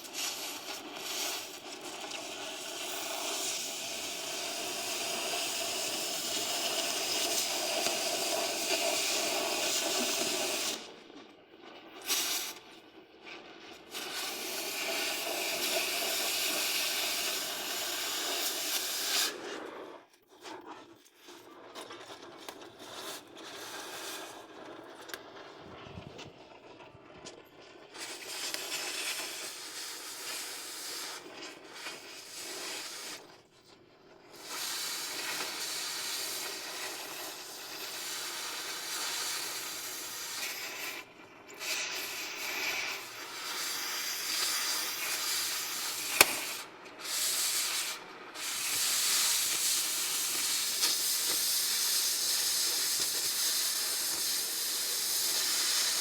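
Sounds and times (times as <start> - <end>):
welding crackling hiss: 0.0 - 11.0, 11.9 - 12.8, 13.7 - 19.6, 22.0 - 26.3, 27.9 - 33.4, 34.2 - 56.0.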